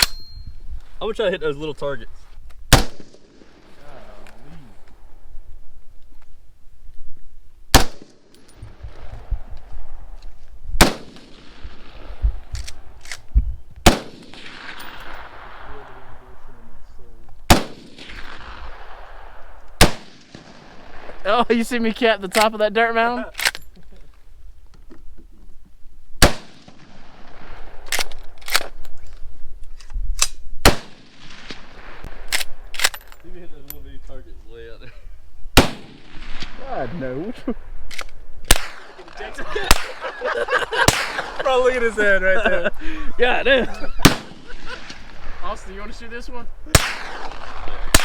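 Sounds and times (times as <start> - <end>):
gunshots with short echo: 17.5 - 21.1, 35.6 - 36.9, 37.9 - 41.4, 44.0 - 45.4, 46.7 - 48.0
gunshots with echo: 38.5 - 40.1, 40.8 - 41.4, 44.0 - 45.2, 46.7 - 48.0.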